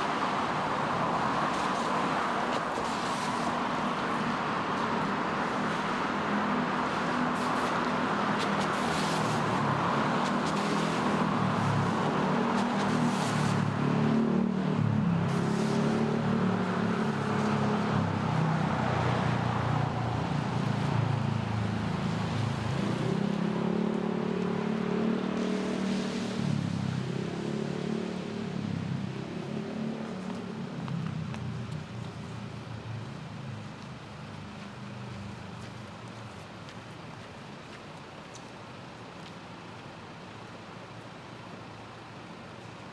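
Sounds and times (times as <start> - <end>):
tyres hissing on wet road: 0.0 - 37.8
car engines passing: 0.1 - 35.6.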